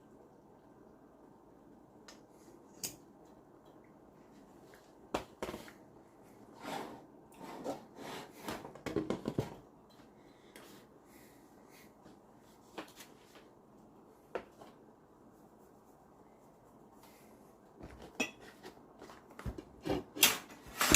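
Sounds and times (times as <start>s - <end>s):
kitchen utensils scraping: 6.6s - 8.6s, 19.8s - 20.9s.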